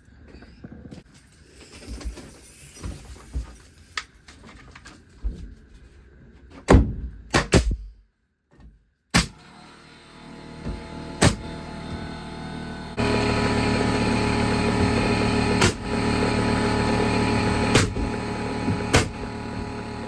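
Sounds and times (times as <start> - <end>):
shuffling of lumber and tools: 0.0 - 7.2.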